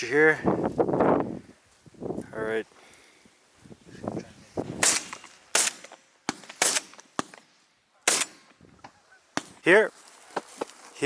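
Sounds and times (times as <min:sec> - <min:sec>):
shotgun shots: 0:04.8 - 0:08.6, 0:09.4 - 0:09.6.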